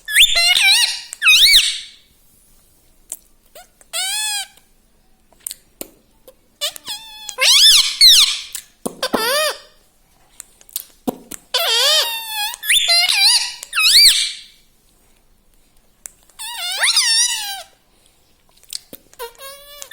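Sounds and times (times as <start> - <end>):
parrot whistling: 0.0 - 2.0, 6.6 - 8.6, 11.6 - 14.6, 16.4 - 17.7.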